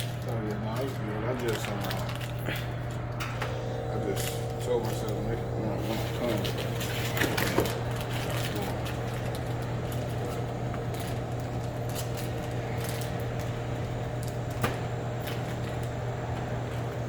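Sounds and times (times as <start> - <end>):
snack wrappers rustling: 0.0 - 3.3, 5.9 - 16.0
steady low hum: 0.0 - 17.0.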